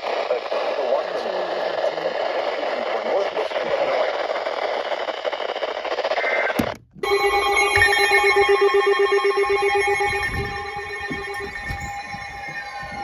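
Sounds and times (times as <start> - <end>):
multi-tone electronic alarm: 7.0 - 13.0.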